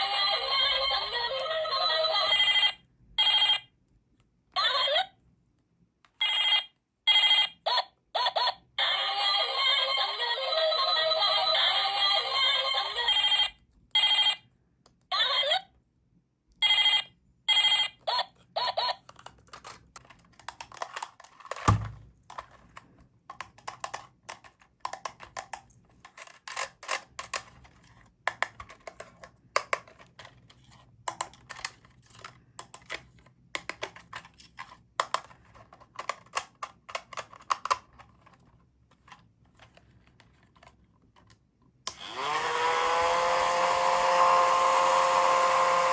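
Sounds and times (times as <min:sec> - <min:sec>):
plastic toy pieces clicking: 0:19.0 - 0:21.7, 0:23.3 - 0:30.4, 0:35.0 - 0:38.1.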